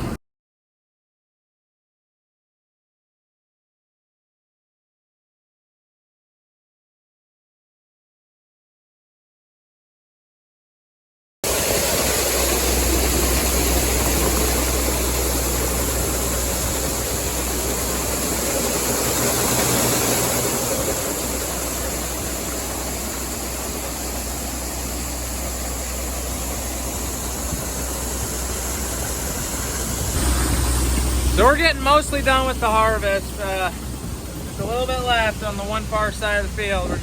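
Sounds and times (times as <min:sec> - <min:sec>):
harvester diesel engine running: 0:11.5 - 0:37.0.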